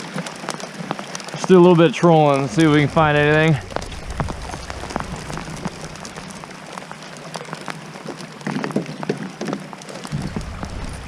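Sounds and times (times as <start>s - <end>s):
rain pattering on kayak and water: 0.0s - 11.0s
low hum: 2.4s - 7.0s, 10.1s - 11.0s.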